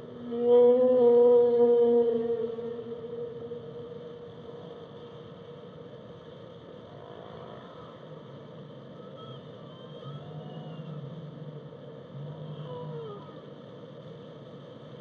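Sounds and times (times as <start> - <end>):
faint distant whale calls: 0.0 - 5.9, 6.8 - 14.0
whale call: 0.1 - 3.9, 9.0 - 11.2, 12.2 - 13.4.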